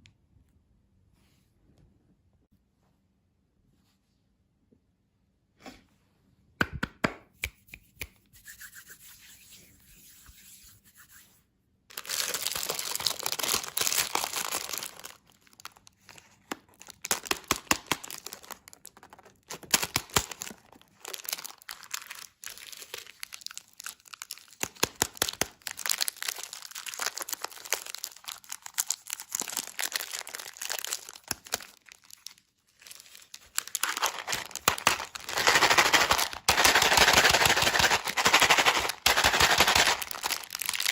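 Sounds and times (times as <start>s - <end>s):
candy packaging crinkling and tearing: 11.9s - 40.9s.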